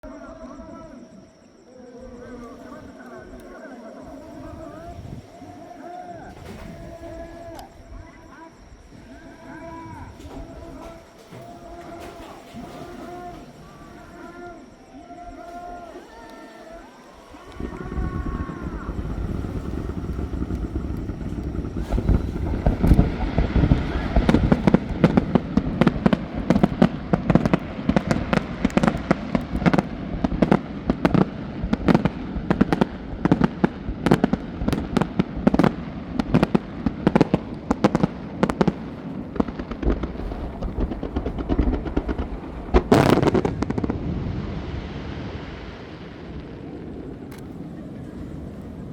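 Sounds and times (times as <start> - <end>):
fireworks shells bursting: 10.2 - 44.0.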